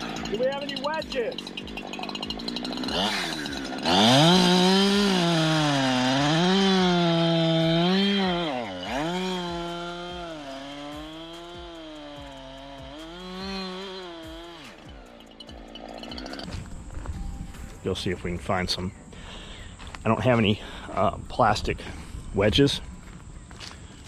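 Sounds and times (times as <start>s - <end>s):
chainsaw cutting log: 0.0s - 16.6s.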